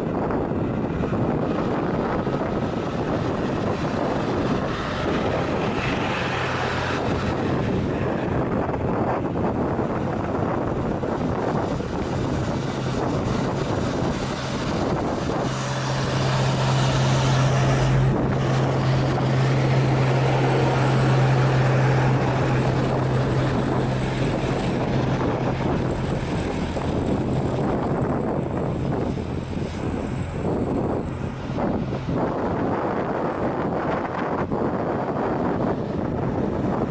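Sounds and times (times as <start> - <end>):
diesel truck engine labouring: 0.0 - 36.9
wind on microphone: 0.0 - 36.9.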